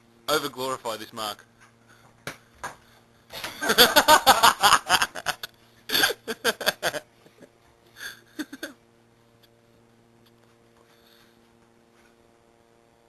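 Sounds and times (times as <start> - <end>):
steady low hum: 0.0 - 13.0
people laughing: 3.4 - 7.5.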